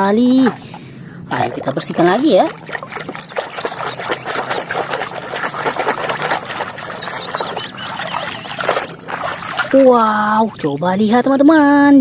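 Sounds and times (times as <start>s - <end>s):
water splashing and sloshing: 0.2s - 11.4s
wet clicks and rubbing: 2.1s - 10.7s.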